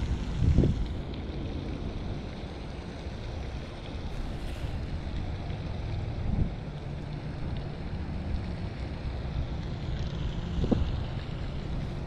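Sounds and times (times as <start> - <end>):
wind buffeting microphone: 0.0 - 2.2, 4.0 - 6.8, 10.4 - 12.0.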